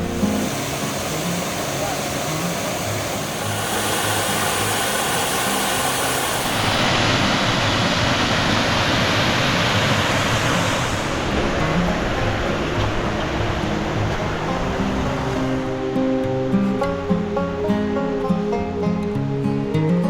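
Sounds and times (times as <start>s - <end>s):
steady rushing noise: 0.0s - 19.2s
quiet background music: 11.0s - 20.0s.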